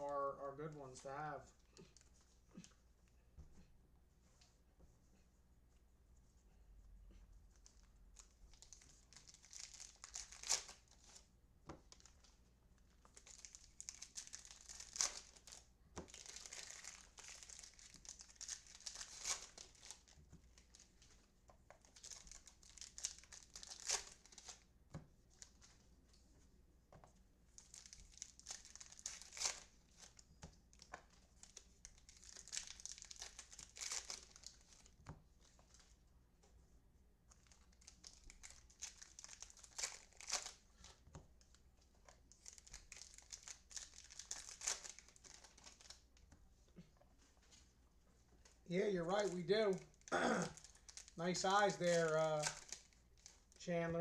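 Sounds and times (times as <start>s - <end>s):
foil wrappers crinkling and tearing: 7.6s - 11.2s, 13.0s - 21.2s, 21.8s - 24.7s, 27.6s - 35.9s, 37.4s - 46.0s, 48.4s - 53.7s.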